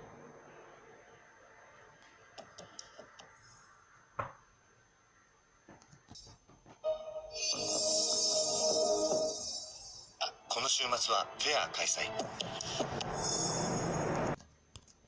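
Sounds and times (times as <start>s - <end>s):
music: 6.9s - 13.5s.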